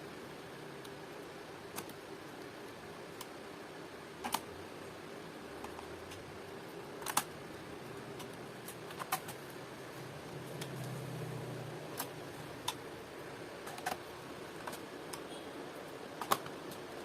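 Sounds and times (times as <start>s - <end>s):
laptop plastic clicks: 4.2s - 4.5s, 7.0s - 7.3s, 8.2s - 9.4s, 16.2s - 16.8s.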